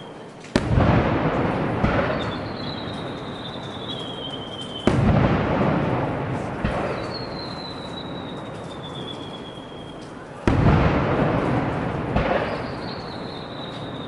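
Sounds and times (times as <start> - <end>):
fireworks bursting: 0.0 - 14.0.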